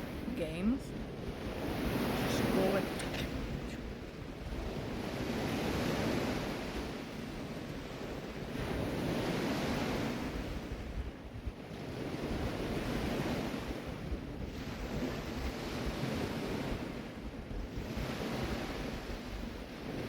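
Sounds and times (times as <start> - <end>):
ocean surf breaking: 0.0 - 7.2
wind buffeting microphone: 0.0 - 20.0.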